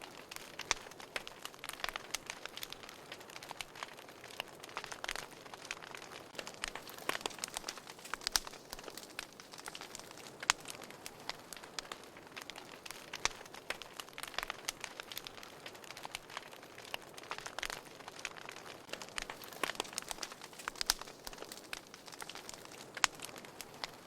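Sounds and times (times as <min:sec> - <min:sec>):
wood fire crackling and popping: 0:00.0 - 0:24.0.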